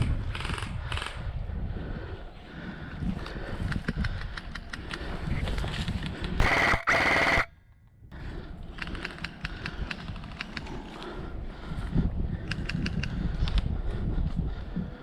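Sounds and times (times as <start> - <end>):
airsoft gun bursts: 6.4 - 7.5.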